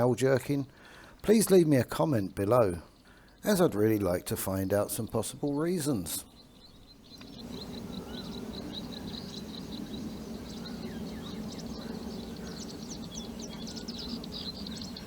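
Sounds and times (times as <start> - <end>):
low background hum: 0.0 - 15.0
bird chip notes: 3.4 - 15.0.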